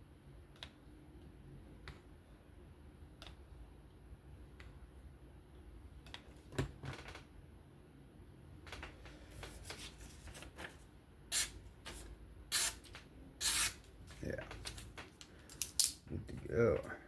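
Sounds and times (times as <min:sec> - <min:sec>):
paper rustling: 0:09.0 - 0:10.8.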